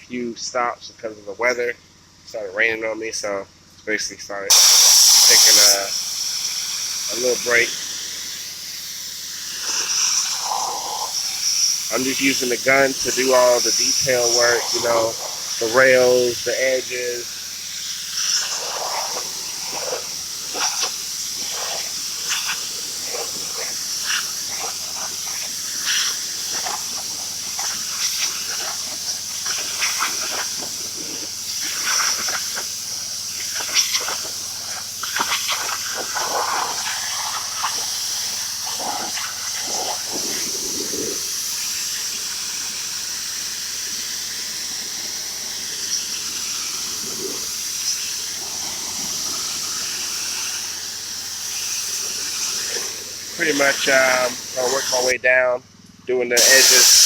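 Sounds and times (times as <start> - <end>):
pressure washer spraying: 4.5 - 55.2, 56.3 - 57.0
water jet splattering on rails: 17.3 - 55.1.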